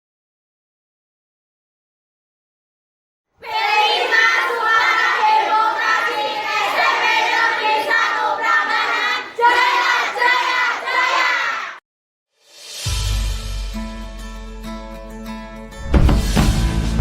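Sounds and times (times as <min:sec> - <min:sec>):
young voices singing together: 0:03.4 - 0:11.8.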